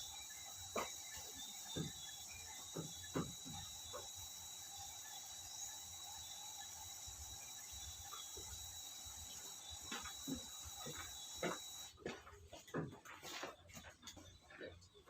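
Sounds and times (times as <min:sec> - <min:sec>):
high-pitched insect drone: 0:00.0 - 0:11.9.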